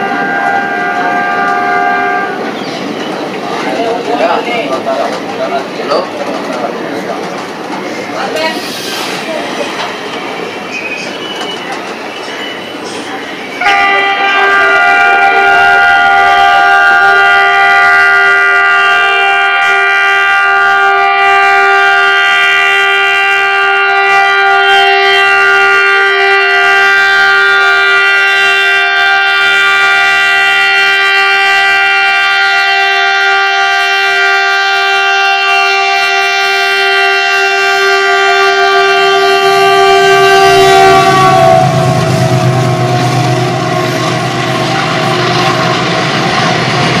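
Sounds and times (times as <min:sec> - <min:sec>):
locomotive horn chord: 0:00.0 - 0:02.4, 0:13.6 - 0:47.0
low rumble of train running: 0:00.0 - 0:47.0.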